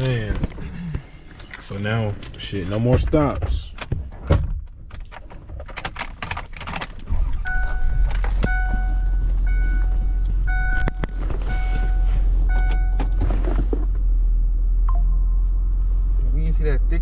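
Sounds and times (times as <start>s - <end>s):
car engine starting and running: 0.0s - 17.0s
clicks and rattles: 1.3s - 7.1s.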